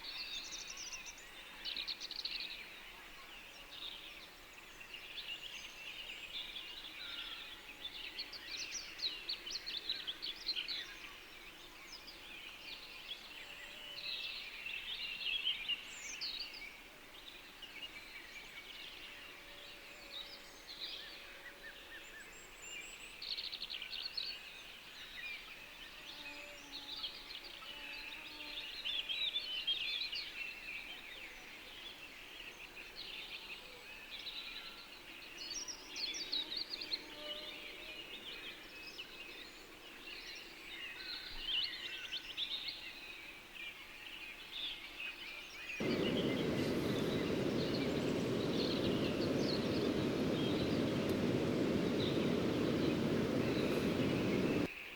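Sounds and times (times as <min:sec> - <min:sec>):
small birds chirping: 0:45.8 - 0:54.7.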